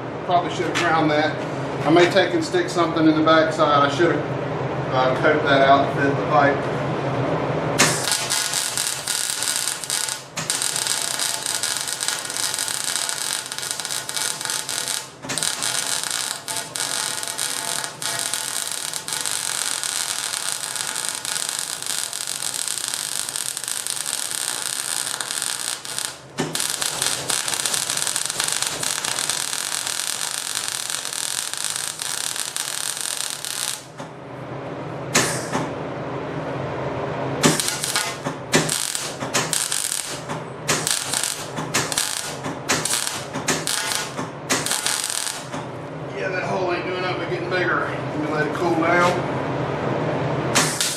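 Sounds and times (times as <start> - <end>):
welding arc crackling and hissing: 7.8 - 34.0, 37.4 - 45.6, 50.6 - 50.9.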